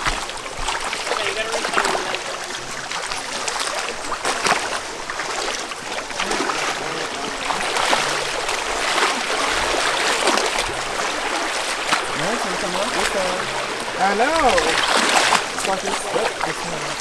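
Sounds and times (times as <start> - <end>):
stream water rushing: 0.0 - 17.0
faint voices: 6.0 - 17.0.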